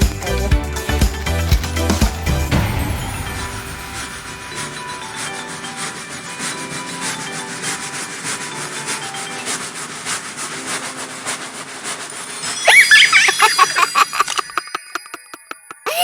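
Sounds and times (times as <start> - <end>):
toy train clicking on wooden track: 4.3 - 16.0
high chirping: 12.5 - 16.0.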